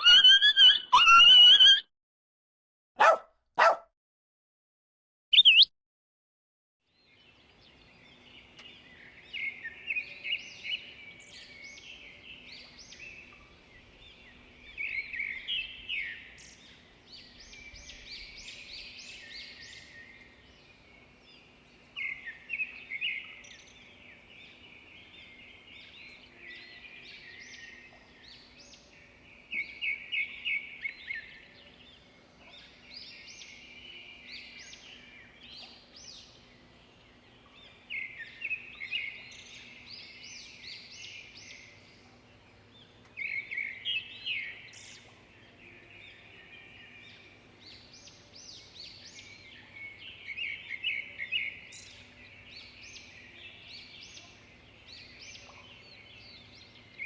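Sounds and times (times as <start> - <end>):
songbirds chirping and trilling: 0.0 - 1.8, 5.3 - 5.7, 6.9 - 57.0.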